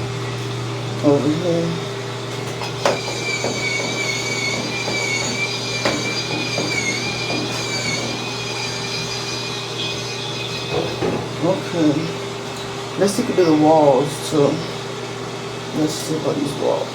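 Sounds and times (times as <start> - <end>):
spin scrubber motor whining: 0.0 - 16.8.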